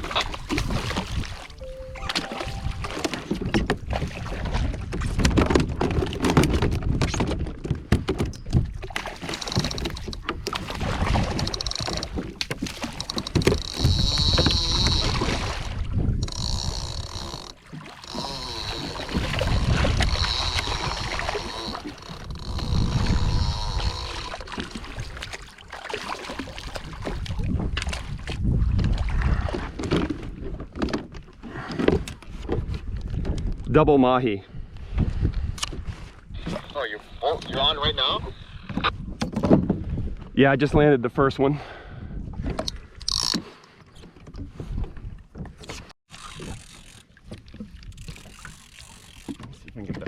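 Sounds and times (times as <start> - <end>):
water sloshing and splashing: 0.0 - 33.7, 42.2 - 50.0
fishing gear knocks and clicks: 4.9 - 15.2, 16.2 - 24.3, 38.7 - 39.8, 42.4 - 50.0
wind buffeting microphone: 13.4 - 17.2, 19.1 - 24.4, 26.9 - 30.4, 32.4 - 43.2.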